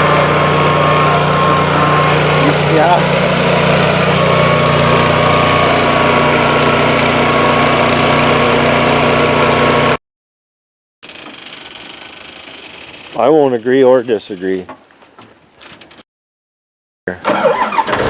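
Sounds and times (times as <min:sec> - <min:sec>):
heavy machine engine idling: 0:00.0 - 0:10.0.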